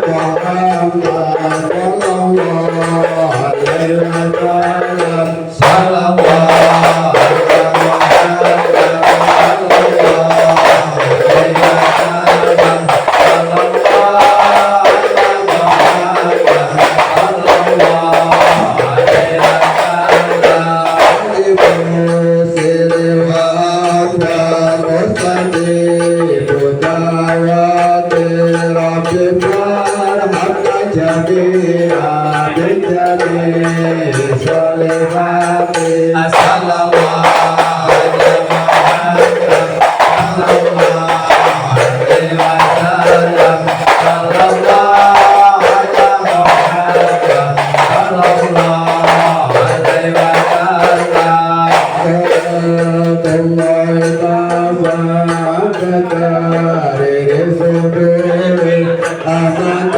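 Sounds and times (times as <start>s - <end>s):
drum percussion: 0.0s - 59.9s.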